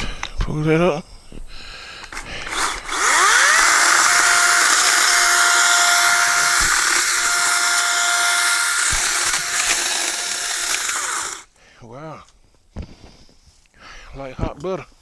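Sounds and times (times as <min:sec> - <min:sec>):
electric chainsaw whining: 0:02.1 - 0:11.5.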